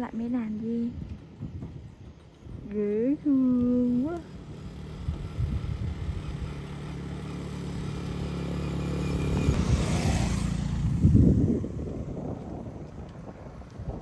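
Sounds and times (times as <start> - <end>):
vehicle engine running: 3.6 - 13.2.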